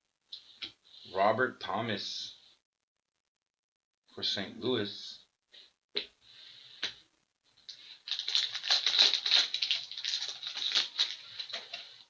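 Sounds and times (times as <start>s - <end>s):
trading cards rustling: 7.7s - 12.0s.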